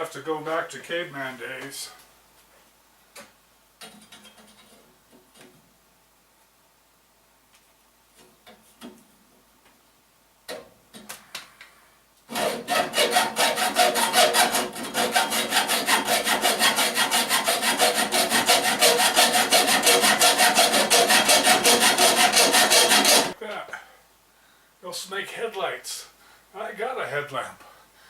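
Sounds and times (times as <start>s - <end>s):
hand saw cutting metal pipe: 12.3s - 23.4s.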